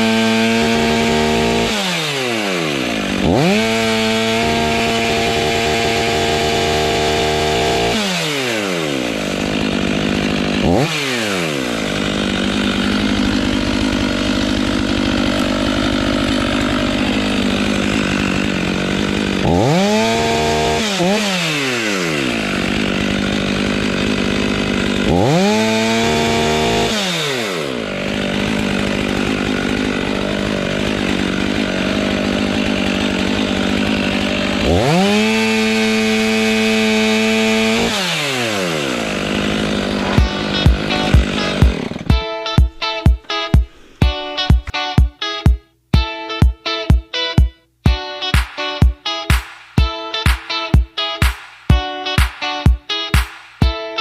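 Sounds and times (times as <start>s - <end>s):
chainsaw engine revving: 0.0s - 44.8s.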